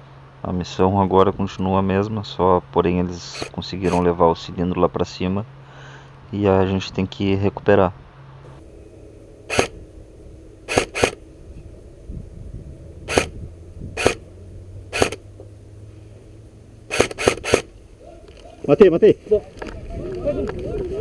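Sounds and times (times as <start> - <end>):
airsoft gun shots: 3.4 - 4.0, 9.5 - 9.8, 10.7 - 11.2, 13.1 - 13.4, 14.0 - 14.2, 14.9 - 15.3, 16.9 - 17.7.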